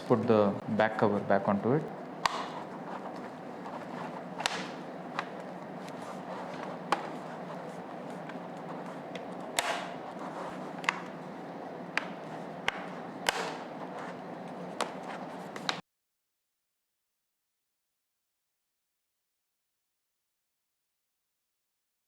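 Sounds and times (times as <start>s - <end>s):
steady background hiss: 0.0s - 15.8s
laptop cover clicks and taps: 2.2s - 2.6s, 4.4s - 6.0s, 10.8s - 11.1s.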